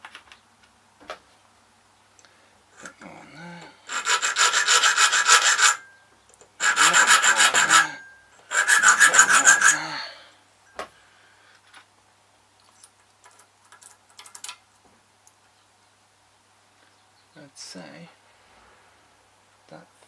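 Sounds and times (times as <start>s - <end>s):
hand file rasping on metal: 3.9s - 5.9s, 6.6s - 10.0s.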